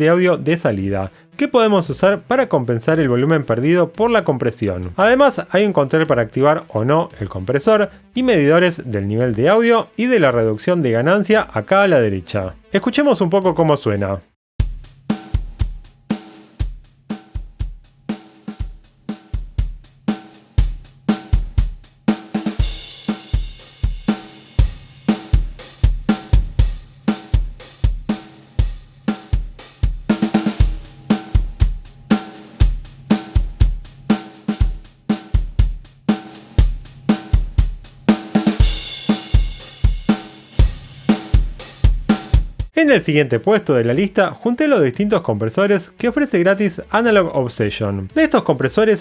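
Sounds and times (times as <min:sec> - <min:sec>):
cymbal crash: 0:14.6 - 0:42.7
drum kit beat: 0:14.6 - 0:42.8.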